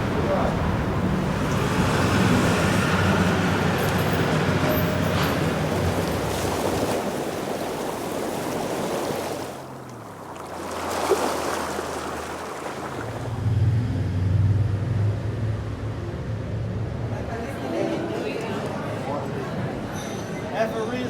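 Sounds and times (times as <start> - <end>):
low engine hum: 0.0 - 19.7
rushing wash of noise: 13.0 - 17.8.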